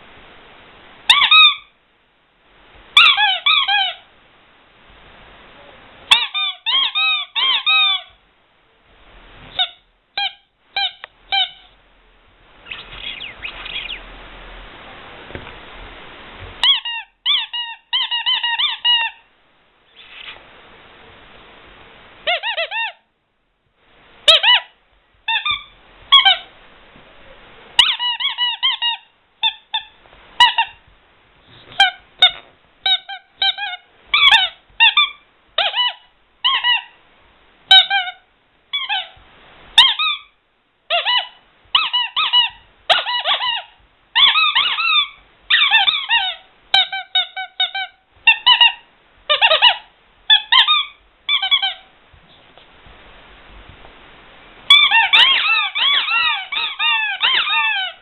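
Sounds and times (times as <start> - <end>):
rubber squeaky toy squeaking: 1.1 - 1.7, 3.0 - 4.0, 6.1 - 8.2, 9.5 - 11.7, 12.6 - 14.0, 16.6 - 19.2, 22.3 - 23.0, 24.3 - 24.7, 25.3 - 26.5, 27.8 - 30.8, 31.7 - 37.0, 37.7 - 39.2, 39.8 - 40.3, 40.9 - 51.9, 54.7 - 58.0.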